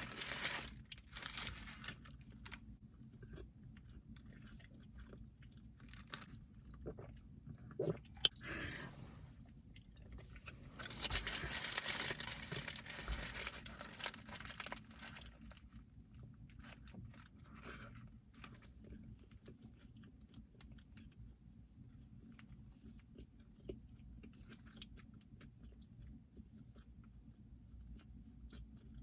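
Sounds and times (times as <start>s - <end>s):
paper wrapper crinkling: 0.0s - 2.6s, 5.8s - 6.4s, 10.7s - 15.8s
crunching and chewing food: 0.0s - 8.5s, 9.4s - 29.0s.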